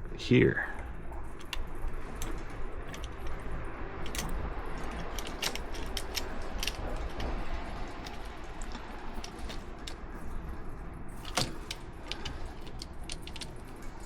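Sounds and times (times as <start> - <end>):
camera clamp clicks and rattles: 1.4 - 10.0.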